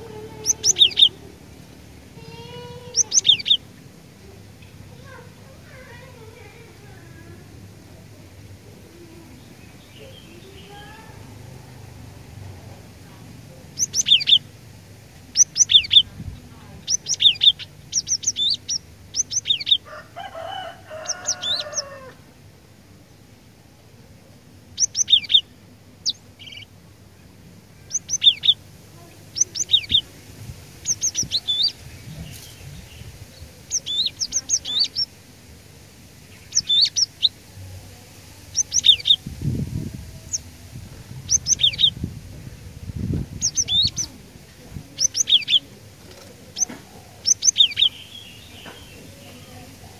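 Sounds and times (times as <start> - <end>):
bird singing high whistled notes: 0.4 - 1.2, 13.8 - 14.4, 38.6 - 39.2, 41.2 - 42.0
low harsh bird call: 13.8 - 14.5, 16.8 - 22.2, 30.7 - 35.2, 36.3 - 37.4.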